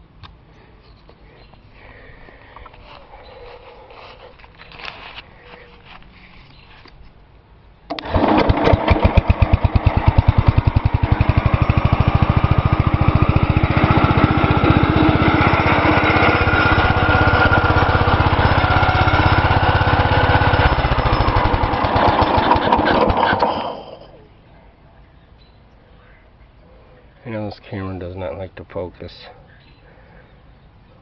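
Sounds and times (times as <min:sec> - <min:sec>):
garden tractor engine running: 0:07.9 - 0:24.2.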